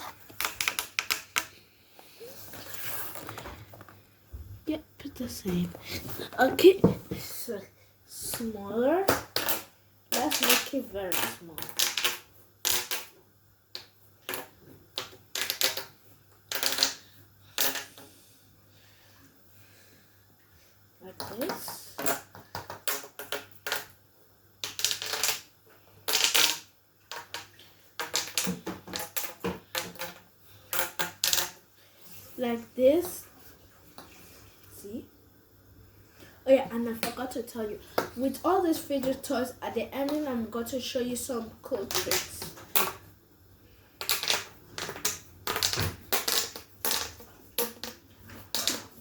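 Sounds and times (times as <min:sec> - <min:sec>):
plastic tubes crackling and clicking: 0:00.0 - 0:01.6, 0:09.1 - 0:18.1, 0:24.6 - 0:31.6, 0:41.8 - 0:43.0, 0:44.0 - 0:49.0
plastic tubes clicking: 0:00.3 - 0:01.6, 0:13.7 - 0:15.9, 0:16.5 - 0:17.0, 0:41.9 - 0:43.0, 0:44.0 - 0:49.0.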